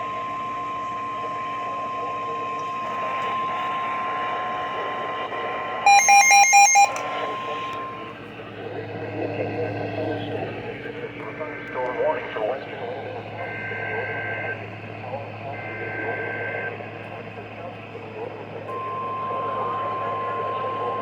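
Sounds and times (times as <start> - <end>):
steady electronic alert tone: 5.9 - 7.0
rapid electronic beeping: 5.9 - 7.6.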